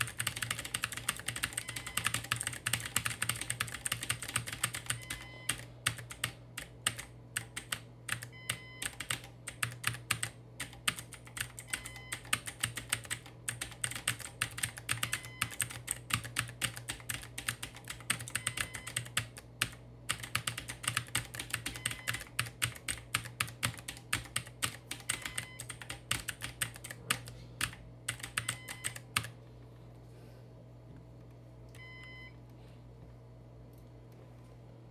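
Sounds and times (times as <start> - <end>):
computer keyboard typing: 0.0 - 29.4
short beeps: 31.8 - 32.4.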